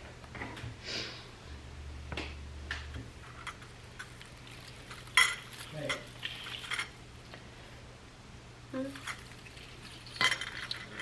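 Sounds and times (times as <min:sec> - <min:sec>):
faint steady hum: 0:00.0 - 0:11.0
small objects clicking and scraping: 0:03.2 - 0:07.0, 0:08.9 - 0:11.0.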